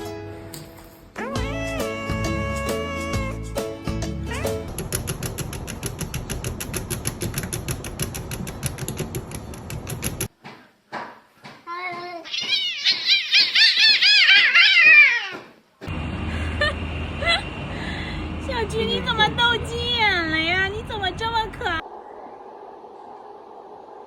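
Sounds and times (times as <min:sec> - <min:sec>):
cat meowing: 0:12.2 - 0:15.6.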